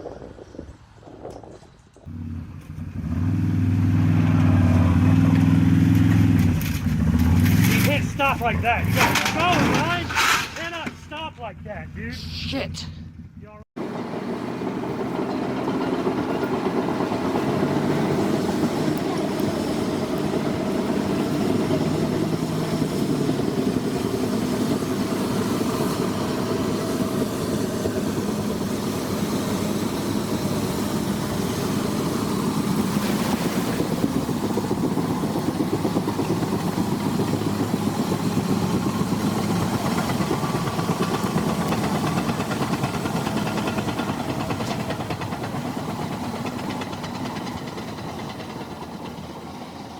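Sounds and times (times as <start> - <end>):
construction machine engine rumbling: 1.7 - 49.9.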